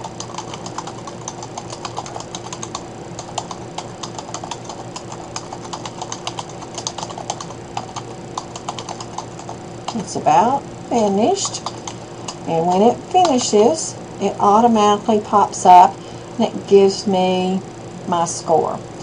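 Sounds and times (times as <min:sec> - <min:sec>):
fast keyboard typing: 0:00.0 - 0:10.1, 0:11.0 - 0:13.6
steady low hum: 0:00.0 - 0:19.0.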